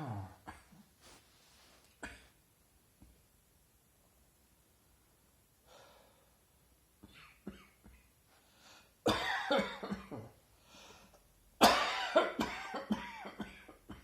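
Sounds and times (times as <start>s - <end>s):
breath drawn in: 1.0s - 2.0s
person coughing: 9.1s - 10.3s, 11.6s - 14.0s.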